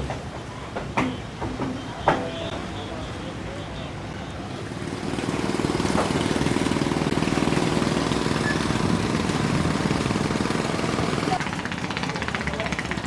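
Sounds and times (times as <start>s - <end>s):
small boat motor running: 4.6s - 13.0s.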